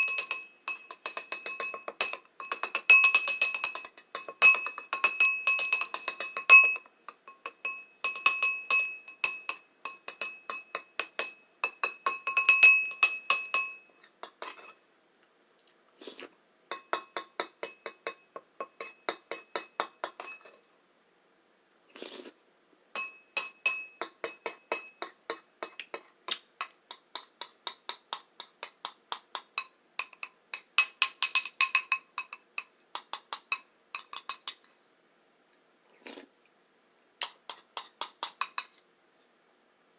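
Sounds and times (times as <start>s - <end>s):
bowl tapped with bell-like ring: 0.0s - 14.7s, 16.7s - 20.6s, 23.0s - 25.5s, 29.6s - 32.4s.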